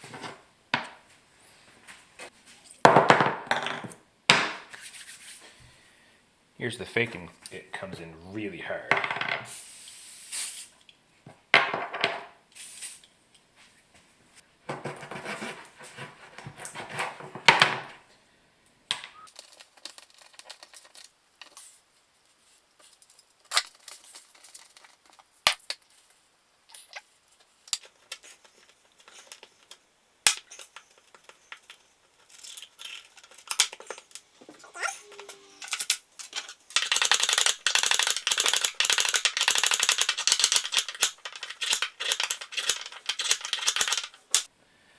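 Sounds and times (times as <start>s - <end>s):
metal tools scraping and rubbing: 34.6s - 35.9s
metal parts clicking and clinking: 35.1s - 44.5s
metal parts rattling: 35.2s - 44.5s.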